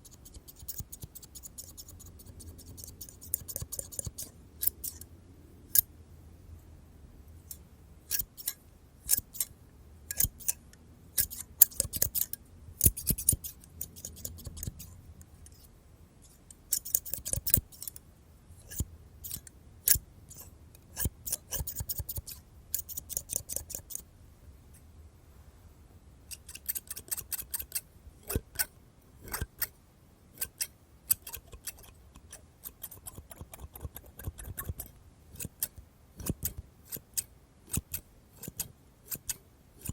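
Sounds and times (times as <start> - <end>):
scissors snipping: 11.2 - 14.8, 26.3 - 29.7, 30.4 - 39.9.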